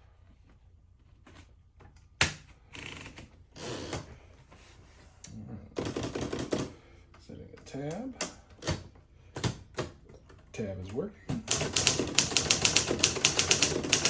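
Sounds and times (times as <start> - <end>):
typewriter carriage clicking and rattling: 11.5 - 14.0
typewriter clack: 11.5 - 14.0.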